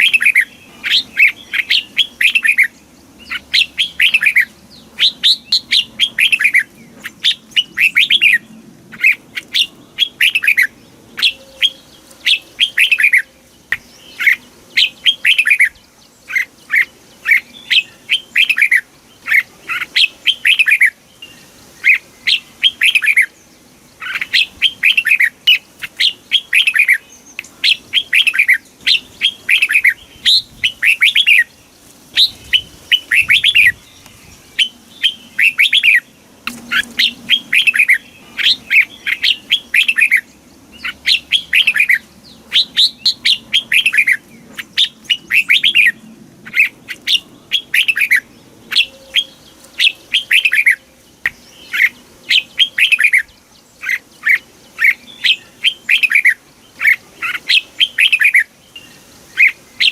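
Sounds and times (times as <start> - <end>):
bulbul song: 0.0 - 59.9.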